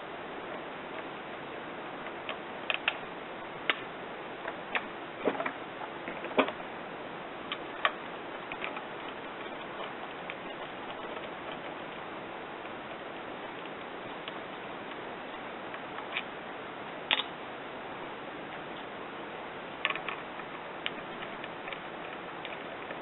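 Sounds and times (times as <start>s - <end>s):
steady hiss: 0.0s - 23.0s.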